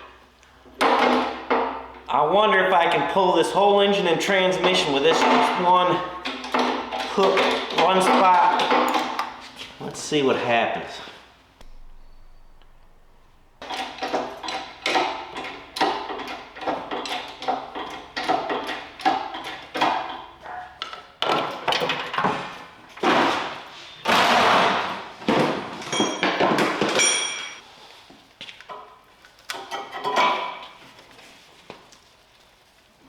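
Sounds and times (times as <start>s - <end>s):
metallic clanks and thumps: 4.6s - 9.4s, 11.6s - 20.3s
high metallic pings: 11.6s - 13.6s
metal scraping: 11.6s - 14.8s.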